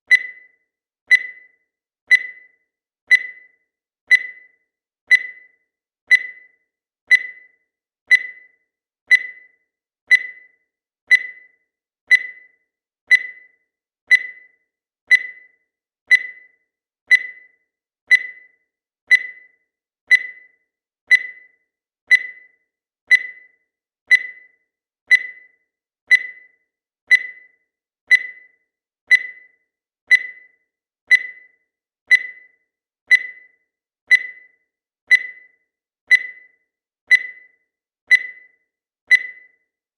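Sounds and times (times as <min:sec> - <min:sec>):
timer beeping: 0:00.0 - 0:39.9.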